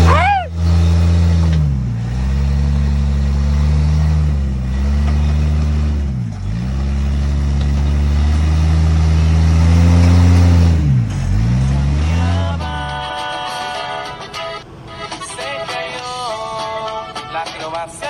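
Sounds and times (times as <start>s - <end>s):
buggy engine at high revs: 0.0s - 13.3s.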